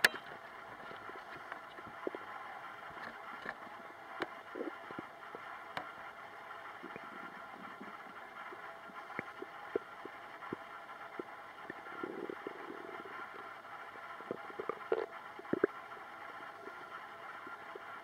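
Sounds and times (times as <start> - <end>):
steady background hiss: 0.0 - 18.0
bubbling rumbles: 0.4 - 18.0
stomach gurgling: 0.6 - 18.0.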